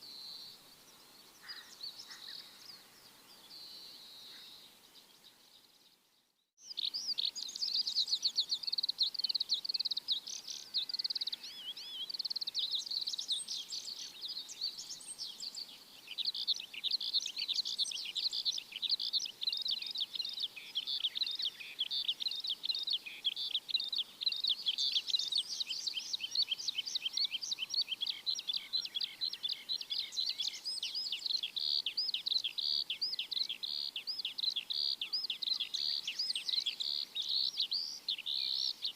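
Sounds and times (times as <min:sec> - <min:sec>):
small birds chirping: 0:00.0 - 0:38.9.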